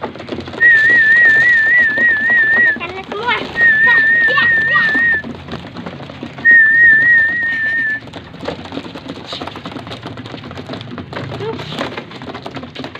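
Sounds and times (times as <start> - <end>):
loud warbling whistle: 6.5 - 8.0.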